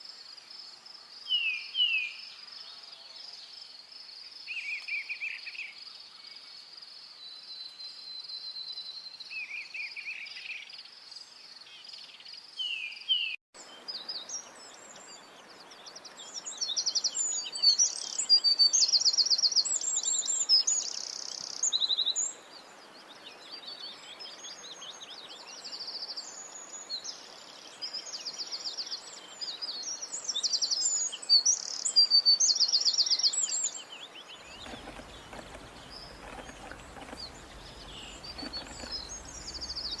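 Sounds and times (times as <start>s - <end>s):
background hiss: 0.0s - 40.0s
birds calling and trilling: 29.4s - 40.0s
insect droning: 34.4s - 40.0s.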